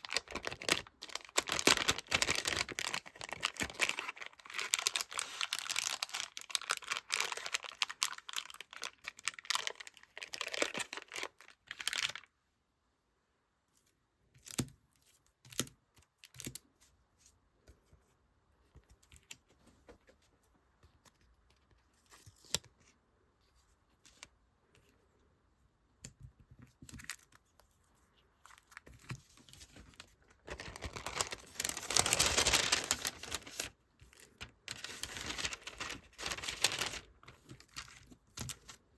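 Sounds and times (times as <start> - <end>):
packaging tearing: 0.0 - 12.2, 30.4 - 33.7, 34.7 - 38.7
plastic and paper packaging crinkling: 0.0 - 12.3, 28.4 - 38.9.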